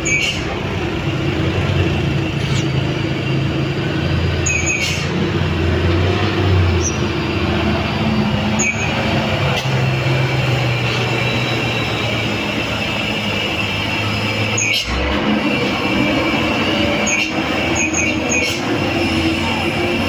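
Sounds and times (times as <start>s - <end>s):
diesel engine running under load: 0.0s - 20.0s
high squeaks and clicks: 4.4s - 5.2s, 8.5s - 9.8s, 14.4s - 15.8s, 16.9s - 18.8s.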